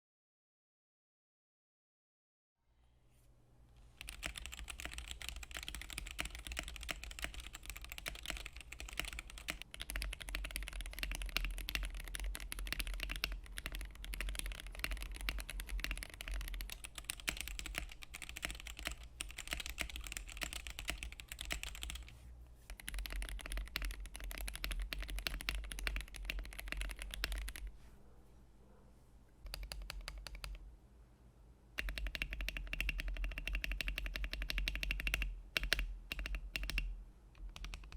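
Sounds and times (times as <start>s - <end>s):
mechanical keyboard typing: 4.0s - 22.1s, 22.7s - 27.7s, 29.4s - 30.6s, 31.8s - 37.9s.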